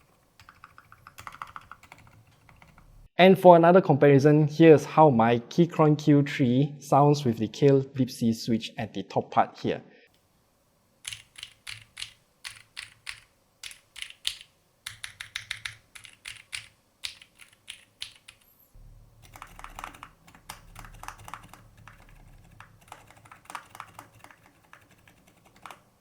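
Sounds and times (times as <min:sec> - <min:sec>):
mechanical keyboard typing: 0:00.0 - 0:02.9, 0:11.0 - 0:18.6, 0:19.2 - 0:25.9
low hum: 0:18.2 - 0:23.4.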